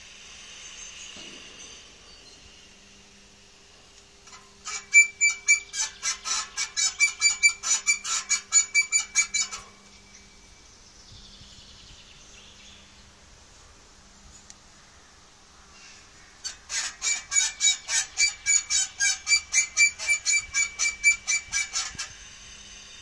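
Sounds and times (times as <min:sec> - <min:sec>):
faint steady hum: 0:00.0 - 0:23.0
exhaust system squeaking: 0:04.2 - 0:10.8, 0:15.7 - 0:23.0.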